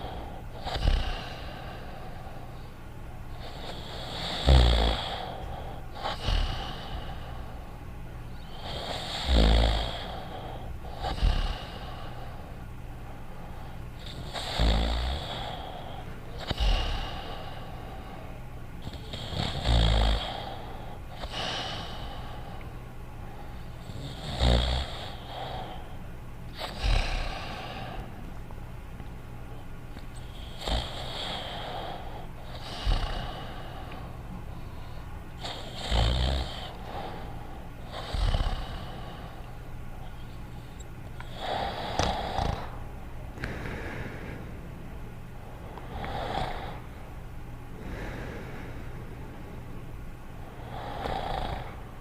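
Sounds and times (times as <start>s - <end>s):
cartoon dog snoring: 0.0s - 1.5s, 3.4s - 7.4s, 8.5s - 12.2s, 14.0s - 17.8s, 18.8s - 22.1s, 23.8s - 25.8s, 26.6s - 28.0s, 30.2s - 34.0s, 35.4s - 39.4s, 41.2s - 42.8s, 45.9s - 46.8s, 50.6s - 51.8s.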